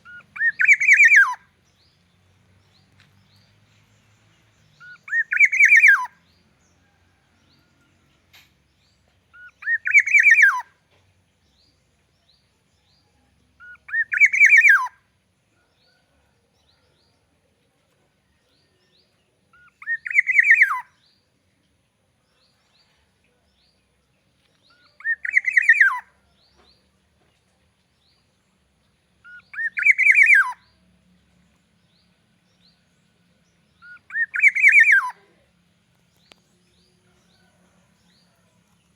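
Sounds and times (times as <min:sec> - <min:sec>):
oriole calling: 0:00.0 - 0:01.5, 0:29.3 - 0:30.6, 0:33.8 - 0:35.3.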